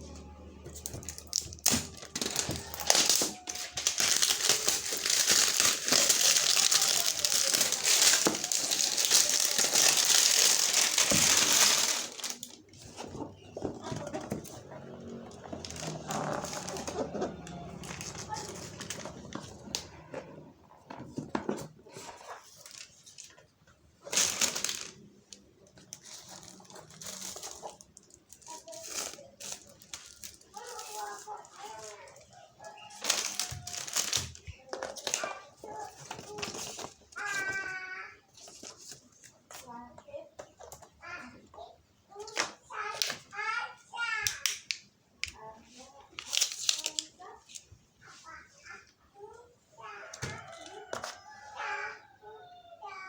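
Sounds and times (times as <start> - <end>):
plastic packaging crinkling: 0.6 - 19.9, 24.0 - 37.6, 46.1 - 47.6.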